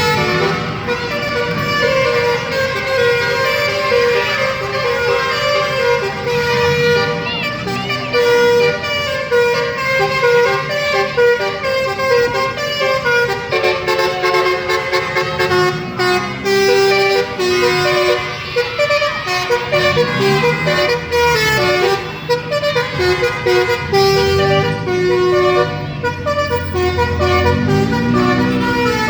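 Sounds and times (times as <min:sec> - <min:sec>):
multi-tone bus horn melody: 0:00.0 - 0:29.0
low engine sound: 0:14.4 - 0:29.0.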